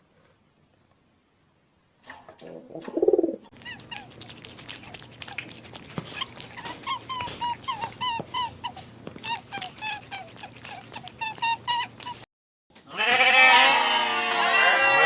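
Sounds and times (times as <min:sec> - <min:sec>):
dog whimpering: 0:03.6 - 0:12.3.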